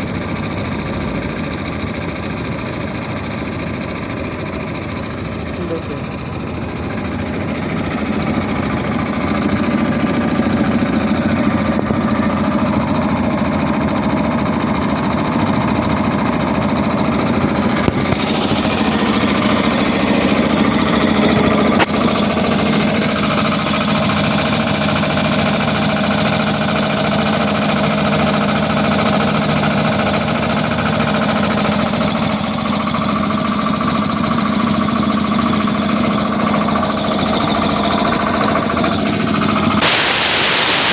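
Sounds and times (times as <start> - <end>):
air compressor running: 0.2 - 40.9
high air hiss: 39.8 - 40.9.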